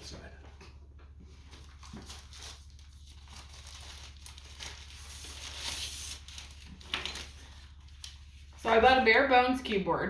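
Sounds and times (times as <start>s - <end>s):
packaging crinkling: 1.4s - 8.5s.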